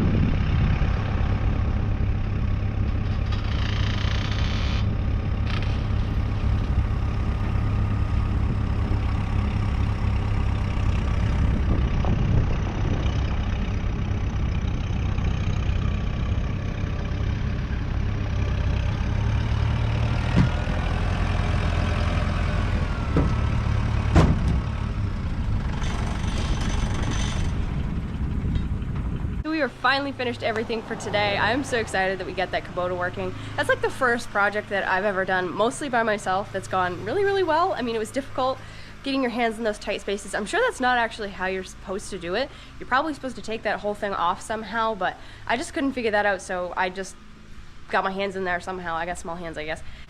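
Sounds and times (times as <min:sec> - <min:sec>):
tractor engine idling: 0:00.0 - 0:50.0
sharp knocks: 0:20.3 - 0:20.7, 0:23.1 - 0:23.5, 0:24.1 - 0:24.8.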